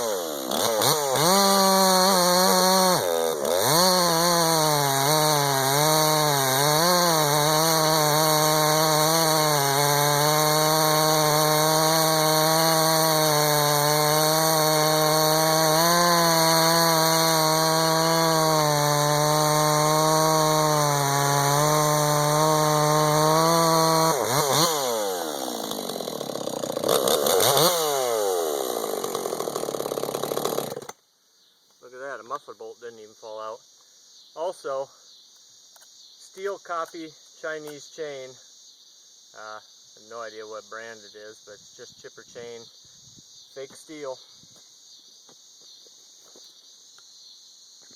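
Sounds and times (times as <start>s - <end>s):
chainsaw cutting wood at high revs: 0.0s - 31.0s.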